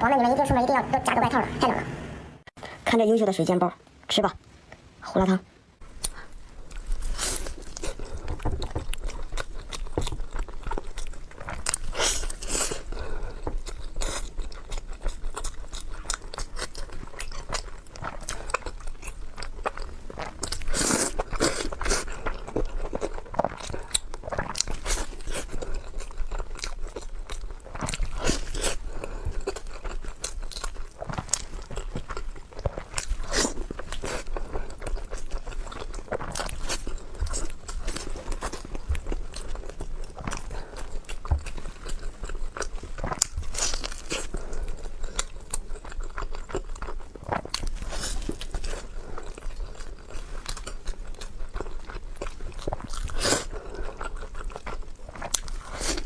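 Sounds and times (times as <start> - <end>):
chewing crispy buns: 6.0 - 56.0.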